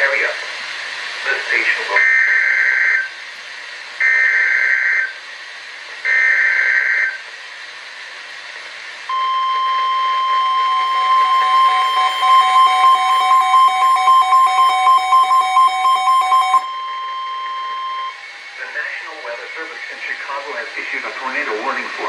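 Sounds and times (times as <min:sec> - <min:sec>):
pulsing lower tone: 0:09.1 - 0:18.8
steady warning tone: 0:09.1 - 0:22.0.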